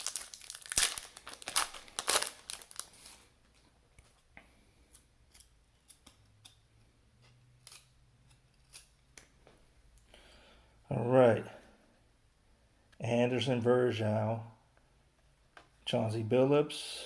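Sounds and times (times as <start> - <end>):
wrapper crinkling and tearing: 0.0 - 3.3
cards clicking and rustling: 0.0 - 4.2.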